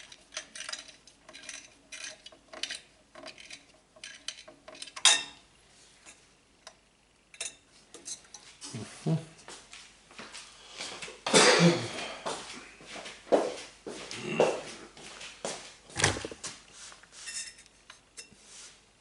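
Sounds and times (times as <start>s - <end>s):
small metal parts clinking: 0.0s - 5.3s.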